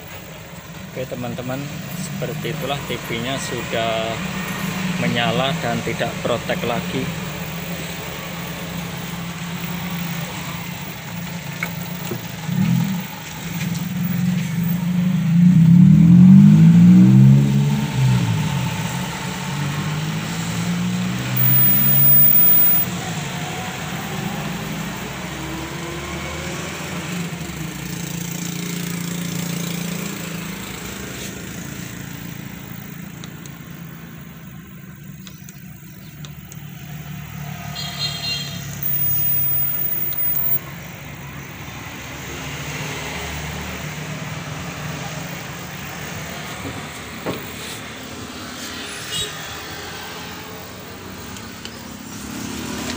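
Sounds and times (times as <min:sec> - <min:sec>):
vehicle engine revving: 0:11.8 - 0:33.5, 0:38.7 - 0:40.6.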